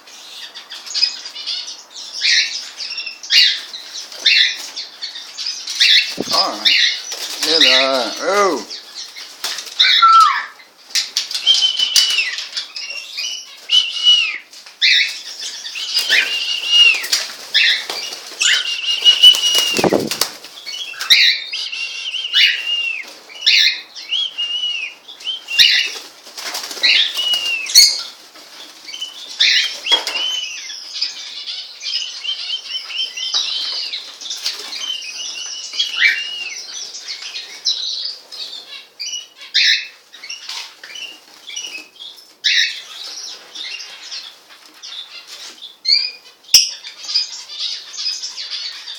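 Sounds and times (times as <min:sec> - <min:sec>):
pet birds chirping: 0:00.0 - 0:48.9
wing flapping: 0:06.1 - 0:08.6, 0:16.0 - 0:21.1, 0:25.7 - 0:28.9.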